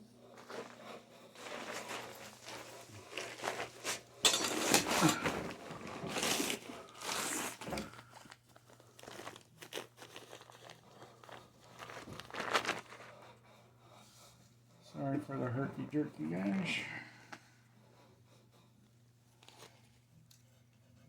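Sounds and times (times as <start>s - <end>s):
crinkling handling noise: 0.3s - 13.2s, 19.3s - 20.4s.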